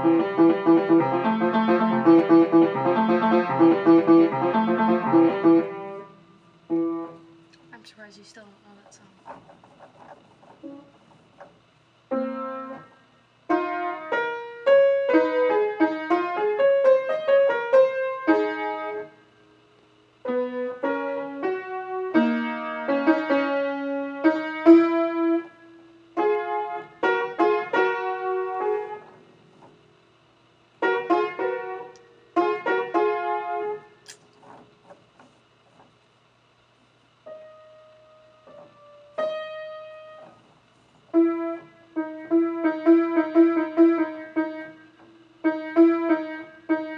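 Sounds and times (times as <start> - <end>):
keyboard piano melody: 0.0 - 7.3, 37.3 - 40.4, 41.2 - 46.9.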